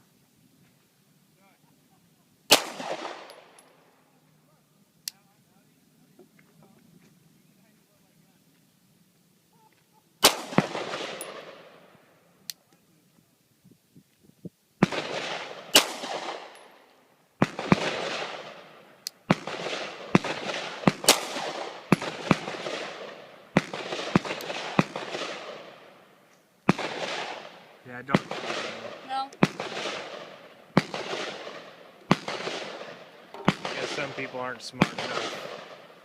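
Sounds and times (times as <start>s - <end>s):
pistol shots echoing: 2.5s - 3.6s, 10.2s - 11.8s, 14.8s - 16.8s, 19.3s - 25.9s, 26.7s - 36.0s.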